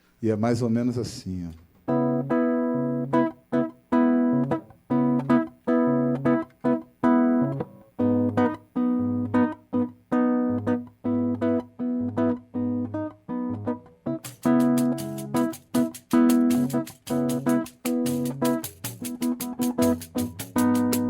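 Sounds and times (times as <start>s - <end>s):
acoustic guitar strumming chords: 1.9s - 21.0s.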